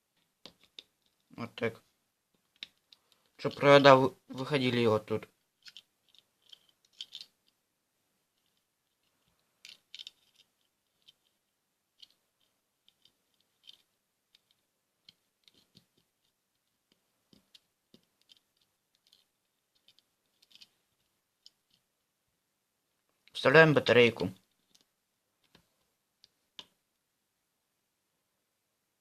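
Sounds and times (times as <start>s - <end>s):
plastic toy bricks clicking: 5.6s - 7.6s, 9.6s - 11.3s, 12.0s - 16.1s, 17.3s - 20.7s.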